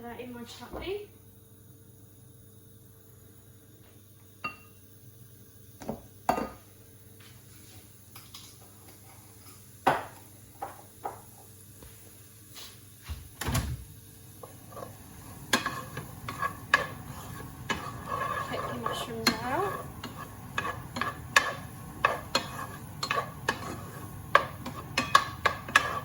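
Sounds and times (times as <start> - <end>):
faint sizzle: 0.0 - 26.0
utensils clinking against pans: 15.5 - 26.0.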